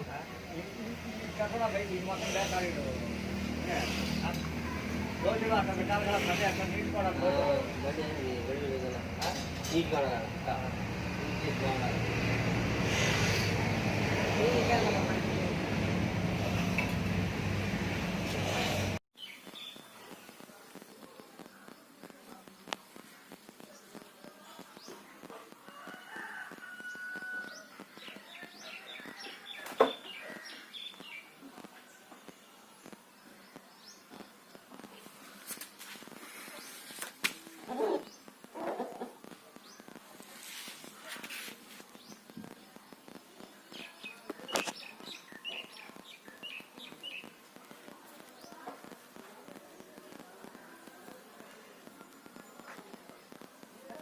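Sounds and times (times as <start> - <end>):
rooster crowing: 25.7 - 27.8.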